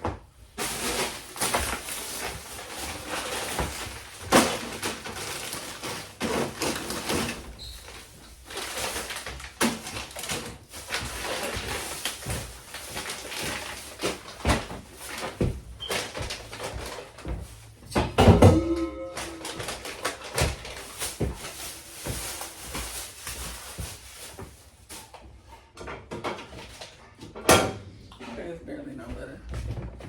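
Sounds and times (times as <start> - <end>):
items knocking against shelves: 0.0 - 25.2
packaging rustling: 0.6 - 17.9, 18.5 - 25.2.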